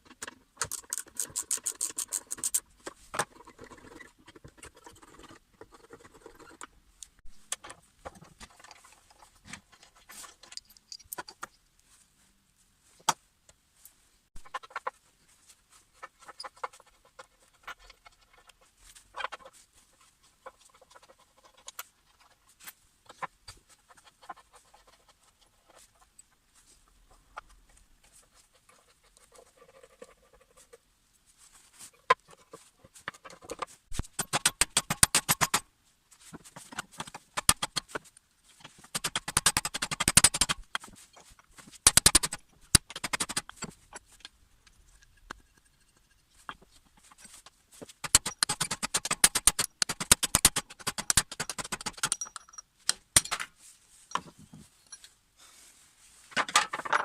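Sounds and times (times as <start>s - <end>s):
tools clicking and scraping: 0.0s - 11.8s, 36.6s - 55.2s.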